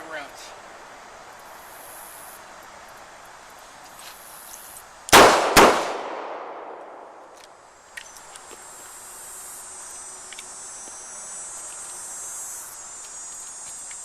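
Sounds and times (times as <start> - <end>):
revolver gunshots with echo: 5.1 - 7.2.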